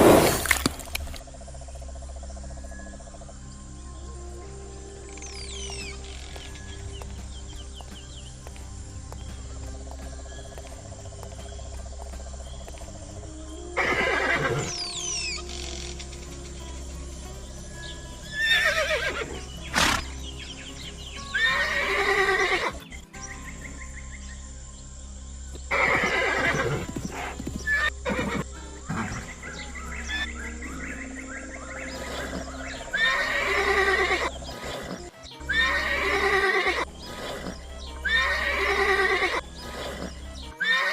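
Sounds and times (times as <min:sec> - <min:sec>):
steady low background noise: 0:00.0 - 0:34.5
background music: 0:00.0 - 0:40.9
horse neighing: 0:13.3 - 0:16.3, 0:18.3 - 0:20.3, 0:21.3 - 0:22.8, 0:25.7 - 0:30.7, 0:31.7 - 0:40.9.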